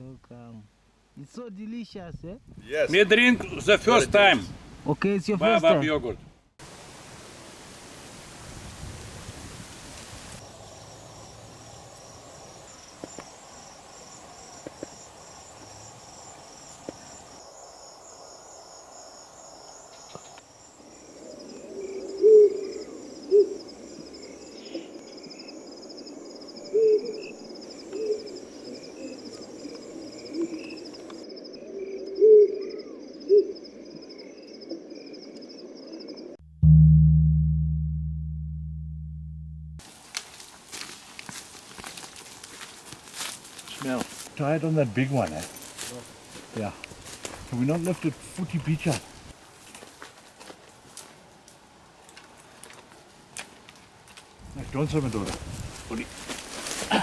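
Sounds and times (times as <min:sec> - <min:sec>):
insects trilling: 0:10.4 - 0:36.4, 0:40.7 - 0:49.8
bird hooting: 0:21.2 - 0:23.7, 0:26.6 - 0:31.0, 0:31.6 - 0:33.6.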